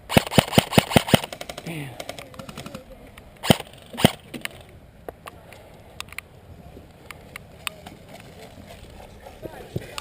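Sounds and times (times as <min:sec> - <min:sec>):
airsoft gun sharp cracks: 0:00.0 - 0:02.6, 0:03.4 - 0:04.3.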